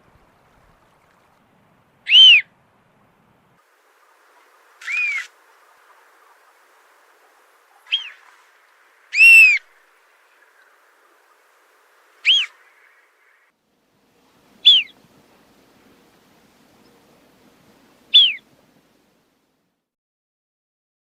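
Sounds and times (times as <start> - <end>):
plover whistled calls: 2.1 - 2.5, 4.8 - 13.5, 14.6 - 15.0, 18.1 - 18.5.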